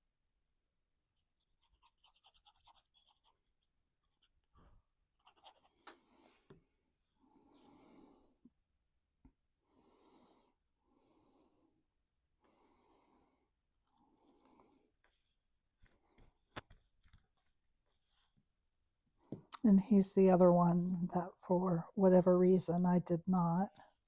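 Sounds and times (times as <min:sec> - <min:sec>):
soft breathing close to microphone: 0:05.9 - 0:08.4, 0:09.6 - 0:15.3.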